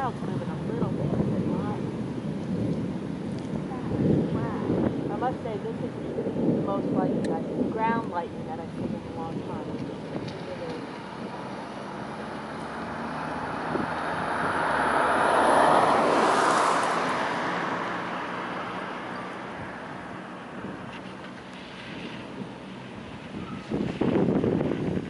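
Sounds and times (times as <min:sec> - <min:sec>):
vehicle passing by: 0:08.2 - 0:25.0.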